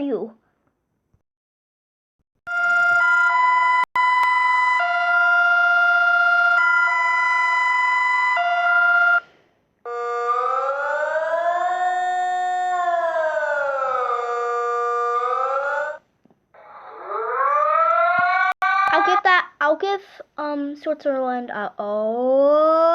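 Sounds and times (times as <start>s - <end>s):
electronic alarm chord: 2.5s - 9.2s, 9.9s - 16.0s
siren tone rising and falling: 2.5s - 9.2s, 9.9s - 16.0s, 16.6s - 19.2s.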